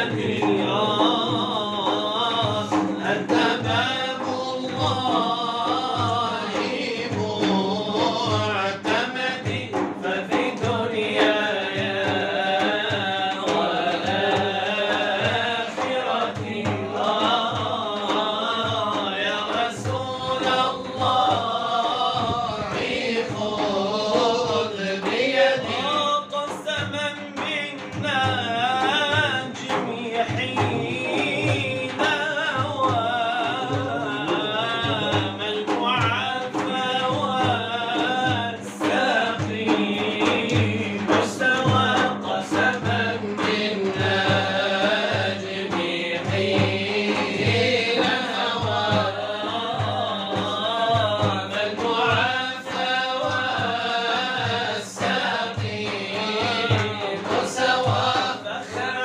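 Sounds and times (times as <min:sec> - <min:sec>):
men singing devotional chant: 0:00.0 - 0:59.0.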